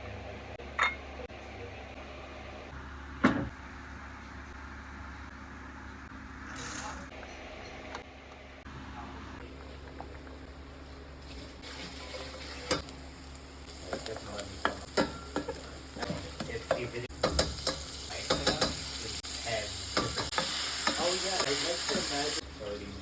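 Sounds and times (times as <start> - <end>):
food sizzling in a frying pan: 11.3 - 23.0
utensil knocking against pan: 13.9 - 18.8.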